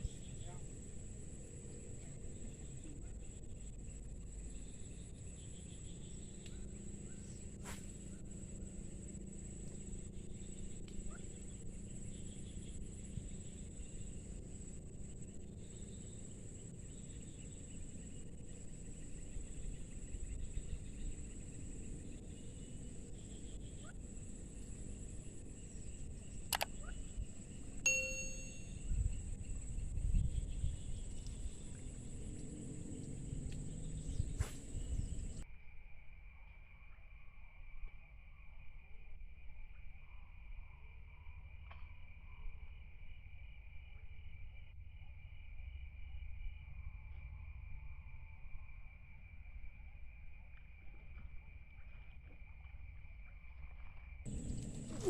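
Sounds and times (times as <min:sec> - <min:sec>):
constant low rumble: 0:00.0 - 0:35.5, 0:39.3 - 0:55.0
insects chirring: 0:00.0 - 0:55.0
sharp click: 0:26.5 - 0:26.8
metallic ding: 0:27.9 - 0:28.8
wind rumbling on microphone: 0:28.8 - 0:35.4.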